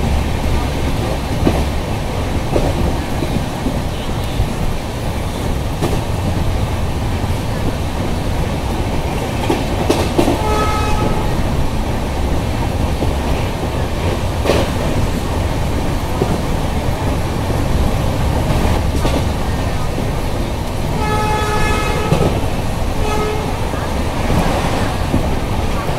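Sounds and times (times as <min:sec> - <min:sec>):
train rumbling on track: 0:00.0 - 0:25.9
wheels clicking over rail joints: 0:00.0 - 0:25.9
train horn: 0:10.2 - 0:11.6, 0:20.9 - 0:24.9.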